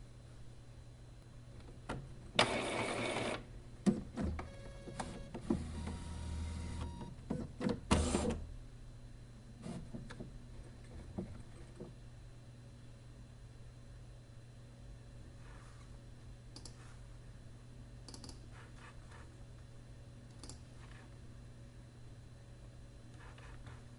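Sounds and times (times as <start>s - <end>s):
small machine clicking and whirring: 18.0s - 18.5s, 20.3s - 21.0s.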